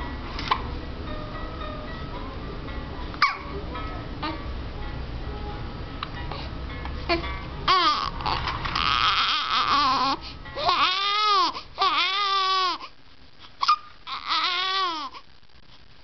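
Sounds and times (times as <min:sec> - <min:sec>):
infant hiccup: 0:03.2 - 0:03.4
infant crying: 0:07.1 - 0:12.8, 0:13.6 - 0:15.2.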